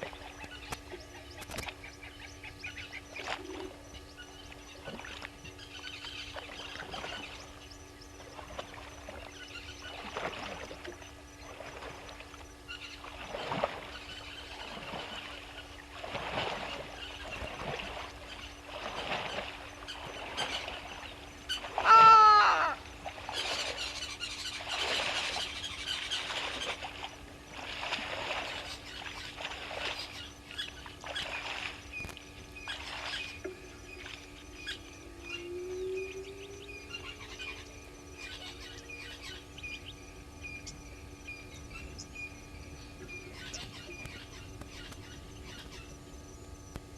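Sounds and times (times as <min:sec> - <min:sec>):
birds calling: 0:00.0 - 0:46.8
steady low hum: 0:00.0 - 0:46.9
loud short animal call: 0:21.8 - 0:22.8.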